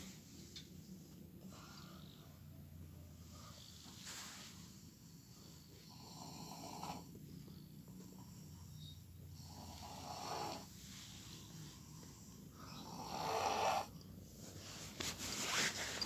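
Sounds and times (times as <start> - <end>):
man snoring: 5.9 - 7.1, 9.4 - 10.6, 12.8 - 13.9.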